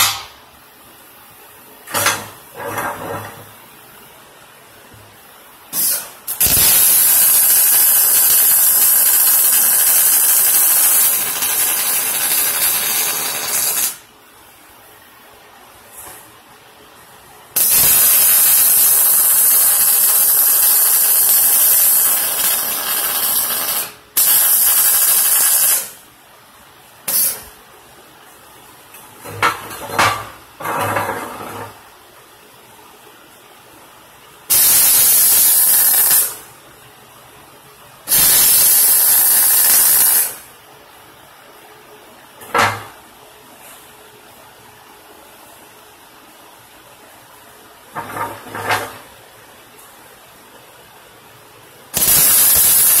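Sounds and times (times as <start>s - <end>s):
welding arc sizzling: 5.7s - 14.1s, 17.6s - 26.0s, 27.1s - 27.6s, 34.5s - 36.5s, 38.1s - 40.5s, 51.9s - 53.0s.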